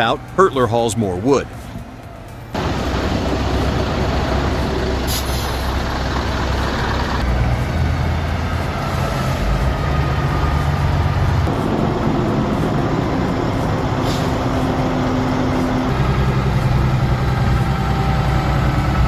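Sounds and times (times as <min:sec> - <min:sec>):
truck engine running: 0:00.0 - 0:19.0
air hiss: 0:02.6 - 0:19.0.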